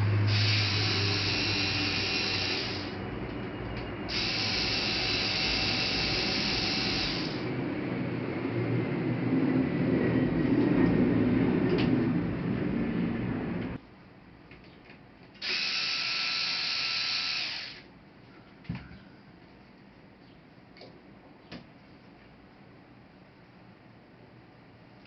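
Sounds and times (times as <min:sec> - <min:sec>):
small power tool motor whirring: 0:00.2 - 0:03.0, 0:04.1 - 0:07.5, 0:15.4 - 0:17.9.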